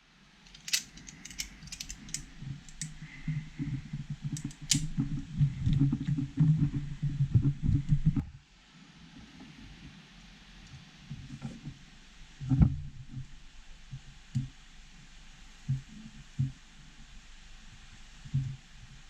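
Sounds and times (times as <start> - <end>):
low rumbling handling noise: 0.4 - 8.4
connector and wires clicking: 0.5 - 3.0, 4.3 - 5.0.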